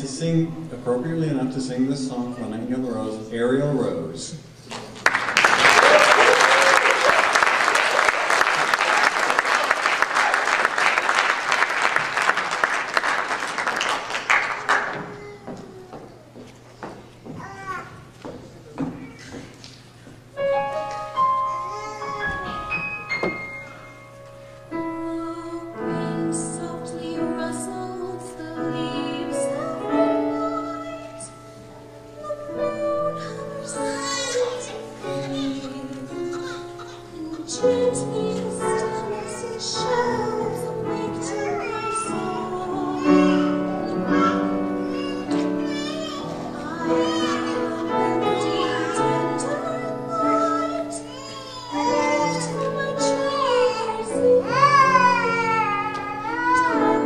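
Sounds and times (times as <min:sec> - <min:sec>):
instrumental accompaniment: 0:20.2 - 0:57.0
woman singing with vibrato: 0:24.8 - 0:31.4, 0:32.0 - 0:45.1, 0:45.7 - 0:57.0.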